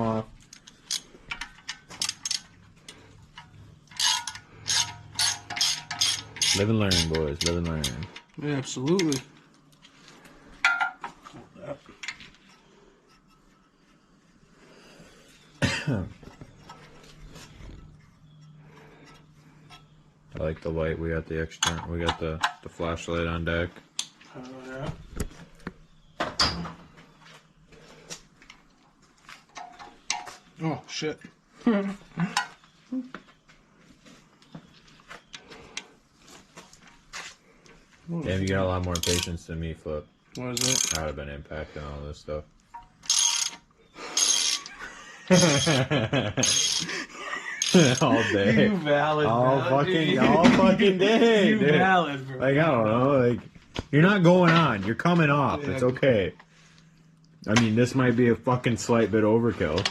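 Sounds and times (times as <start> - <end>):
hand tools clinking on metal: 0.5 - 2.5, 3.4 - 9.2, 38.8 - 39.4, 40.6 - 41.1, 43.0 - 48.2.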